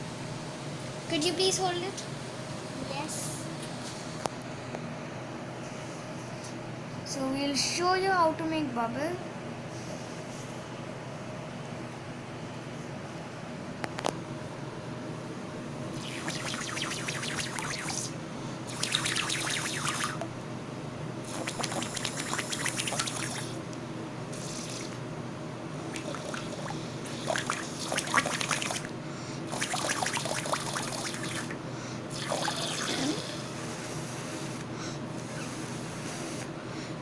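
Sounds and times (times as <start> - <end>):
air blown through straw into slime: 16.0 - 20.2, 21.3 - 23.6, 25.9 - 28.9, 29.5 - 33.4.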